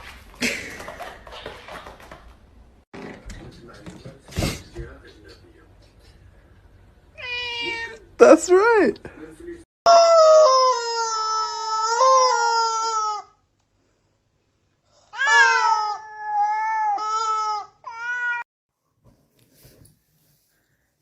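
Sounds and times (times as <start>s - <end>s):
cat meowing: 7.2s - 8.0s, 15.2s - 18.4s.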